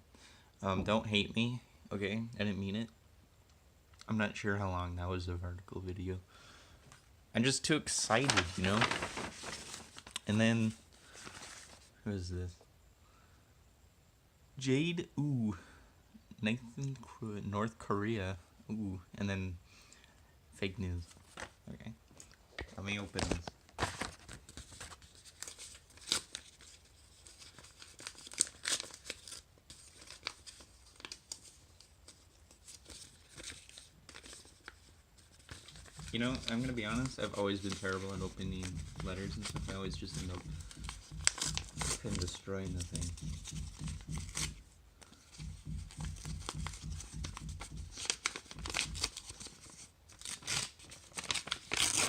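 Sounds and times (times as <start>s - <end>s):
paper rustling and crinkling: 7.9s - 11.9s, 21.1s - 21.6s, 22.2s - 52.0s
paper envelope ripping: 8.0s - 10.3s, 23.1s - 44.5s, 45.4s - 52.0s.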